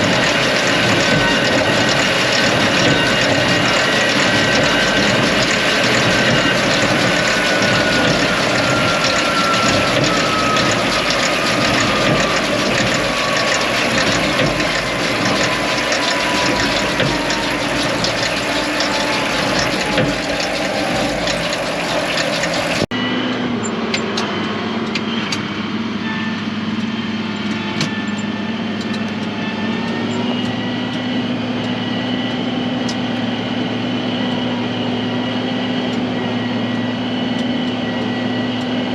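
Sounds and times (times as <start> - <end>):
low engine hum: 0.0 - 26.0
tractor and baler running: 0.0 - 38.9.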